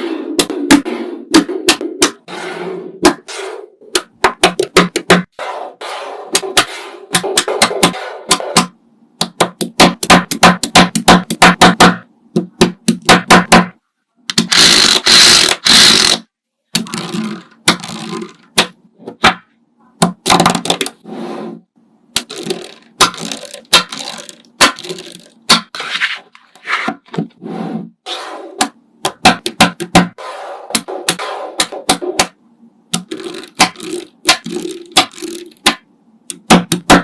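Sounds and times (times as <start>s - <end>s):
sharp clicks and taps: 6.4s - 13.7s, 28.6s - 37.0s.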